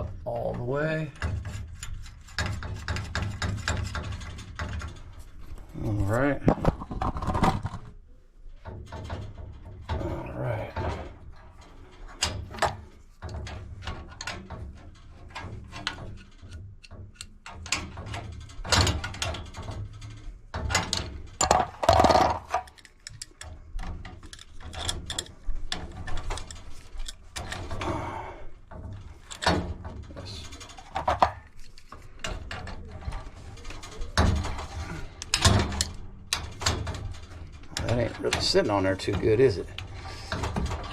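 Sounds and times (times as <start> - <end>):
metal tool clicks and clanks: 12.1 - 27.8, 29.1 - 40.9.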